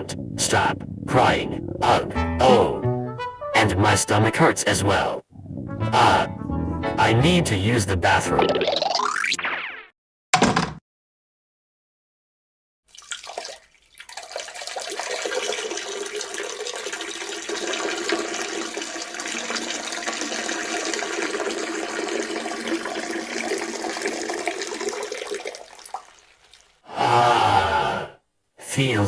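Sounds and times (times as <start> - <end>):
urine stream splashing into toilet: 12.9 - 26.9.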